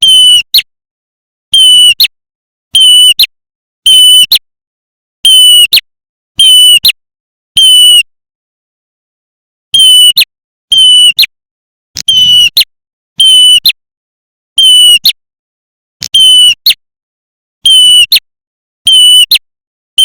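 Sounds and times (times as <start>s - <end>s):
piercing bird call: 12.1s - 12.6s.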